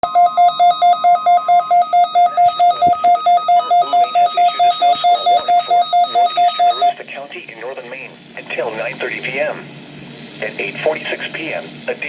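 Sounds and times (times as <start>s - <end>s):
rapidly pulsing alert beep: 0.0s - 6.9s.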